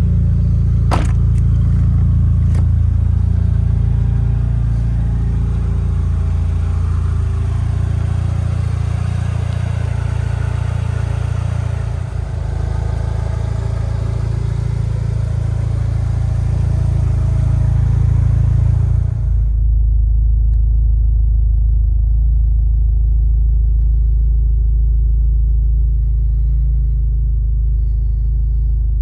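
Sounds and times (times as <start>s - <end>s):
car engine idling: 0.0s - 19.6s
dull low rumble: 0.0s - 29.0s.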